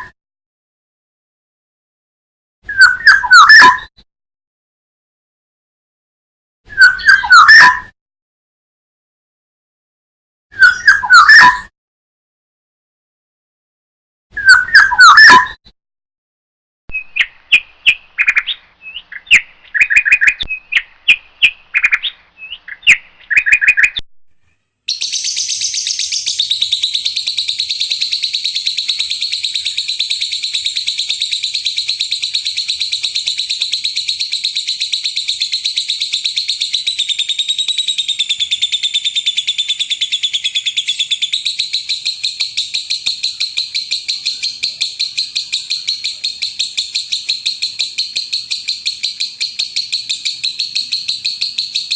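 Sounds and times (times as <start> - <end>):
high bird trill: 2.7 - 3.9, 6.8 - 7.9, 10.6 - 11.7, 14.4 - 15.6, 16.9 - 24.0, 24.9 - 51.9
songbird chirps: 2.7 - 3.9, 6.7 - 7.9, 16.9 - 24.0, 24.9 - 51.9.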